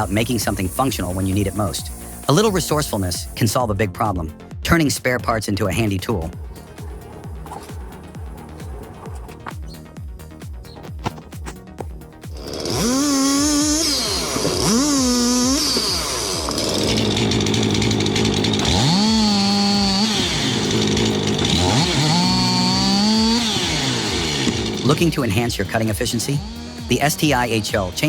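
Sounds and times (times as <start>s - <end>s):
background music: 0.0s - 28.0s
chainsaw engine revving: 6.2s - 9.5s, 12.3s - 28.0s.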